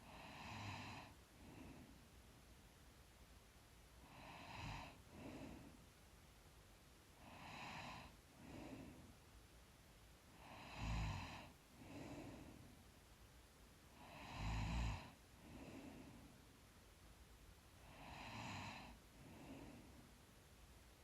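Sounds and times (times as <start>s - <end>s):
light snore: 0.0s - 1.9s, 4.0s - 5.8s, 7.2s - 9.1s, 10.4s - 12.6s, 14.0s - 16.3s, 17.8s - 20.0s
woman breathing deeply asleep: 0.0s - 2.0s, 4.0s - 5.9s, 7.2s - 9.2s, 10.3s - 12.9s, 13.9s - 16.4s, 17.8s - 20.2s.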